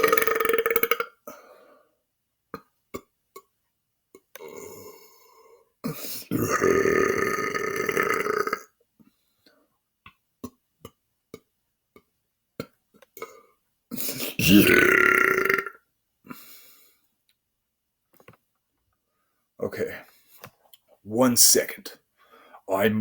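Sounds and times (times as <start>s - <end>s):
man belching: 0.0s - 1.2s, 4.4s - 5.2s, 5.9s - 8.7s, 14.1s - 15.8s.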